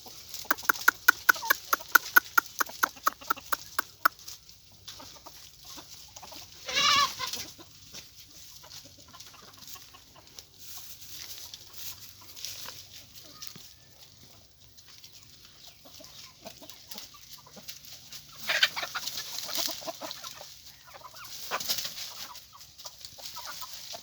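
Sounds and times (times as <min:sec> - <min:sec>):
chickens clucking: 0:00.0 - 0:24.0
chicken wavering call: 0:00.4 - 0:04.2.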